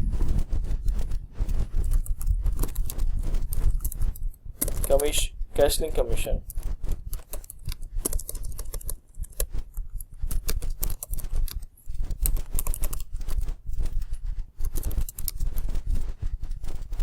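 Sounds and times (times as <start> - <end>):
low steady rumble: 0.0 - 7.1
typing on computer keyboard: 1.8 - 5.1, 6.4 - 15.7.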